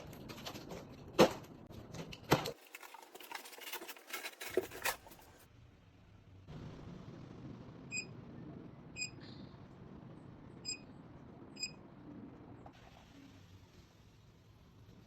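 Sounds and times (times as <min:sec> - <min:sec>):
short electronic beeps: 0:09.0 - 0:09.2.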